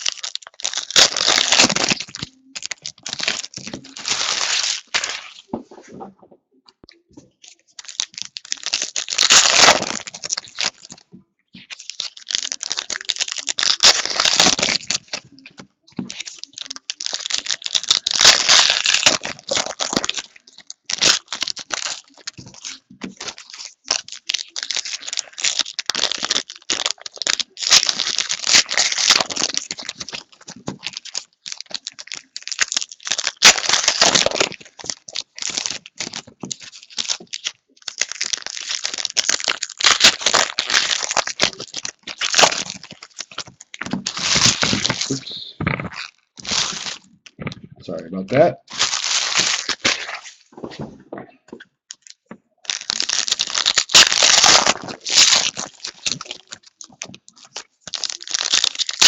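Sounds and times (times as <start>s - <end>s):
plastic wrappers crinkling and tearing: 0.0s - 6.0s, 6.8s - 47.7s, 48.3s - 50.8s, 51.9s - 59.0s.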